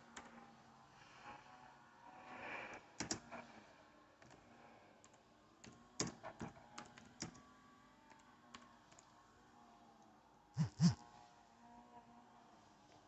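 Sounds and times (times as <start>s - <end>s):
keyboard typing clicks: 3.0s - 3.3s.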